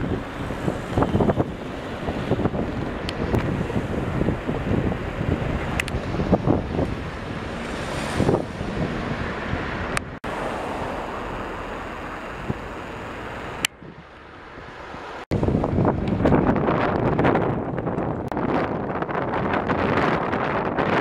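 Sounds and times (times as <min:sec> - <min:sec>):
strong wind buffeting microphone: 0:00.0 - 0:21.0.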